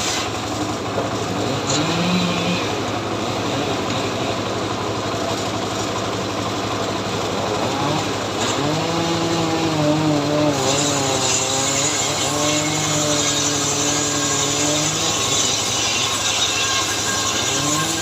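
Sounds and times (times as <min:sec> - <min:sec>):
hiss of cutting: 0:00.0 - 0:00.4, 0:10.6 - 0:18.0
chainsaw cutting wood: 0:00.0 - 0:18.0.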